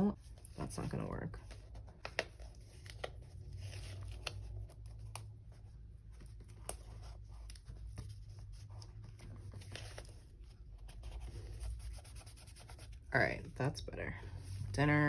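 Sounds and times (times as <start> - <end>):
low steady hum: 0.0 - 15.0
pen clicks and paper rustles: 1.4 - 12.9.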